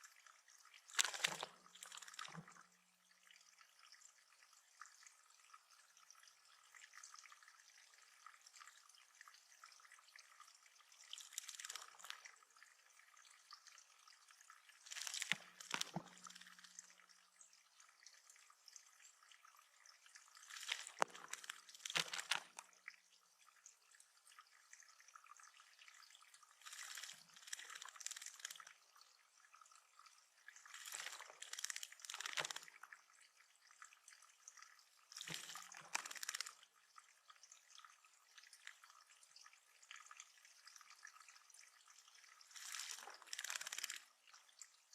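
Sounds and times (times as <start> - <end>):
water trickling and dripping: 0.0 - 44.9
water splashing: 0.9 - 2.6, 11.1 - 12.4, 14.8 - 17.0, 20.3 - 22.8, 26.6 - 28.7, 30.6 - 32.8, 35.1 - 36.6.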